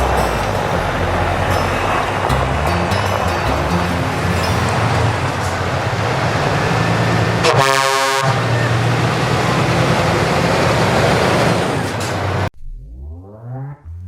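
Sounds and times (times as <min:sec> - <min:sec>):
vehicle engine drone: 0:00.0 - 0:14.0.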